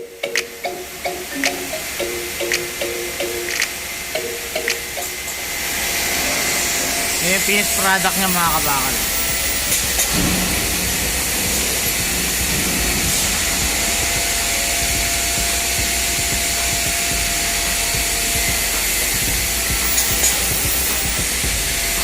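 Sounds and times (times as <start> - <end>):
faint steady whine: 0.0 - 22.0
steady hiss: 0.1 - 22.0
low rumble: 9.0 - 22.0.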